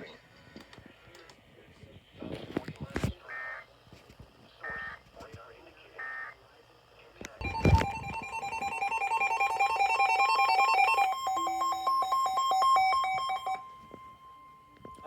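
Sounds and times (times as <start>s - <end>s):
electronic alert tone warbling: 7.4s - 15.0s.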